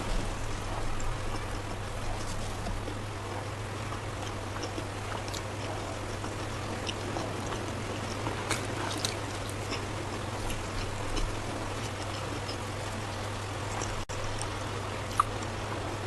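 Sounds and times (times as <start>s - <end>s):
low hum and hiss: 0.0s - 16.0s
person chewing food: 3.8s - 13.0s, 13.7s - 15.6s
wet mouth clicks: 15.1s - 15.5s.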